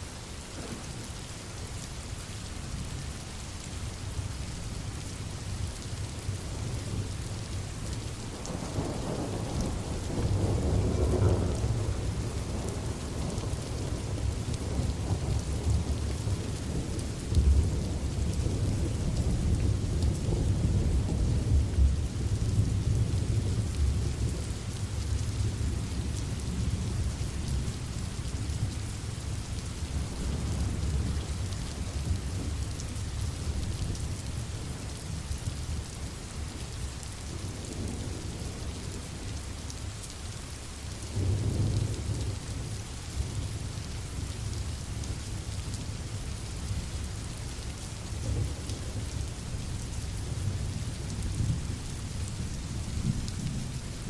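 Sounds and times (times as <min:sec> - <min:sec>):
steady rain: 0:00.0 - 0:54.0
thunder rumbling: 0:08.5 - 0:22.0.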